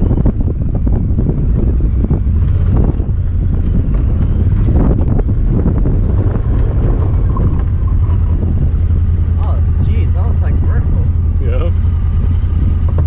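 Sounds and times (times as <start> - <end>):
vehicle engine and tyre rumble: 0.0 - 13.0
wind buffeting microphone: 0.0 - 13.0
knocks and rattles: 0.9 - 9.6.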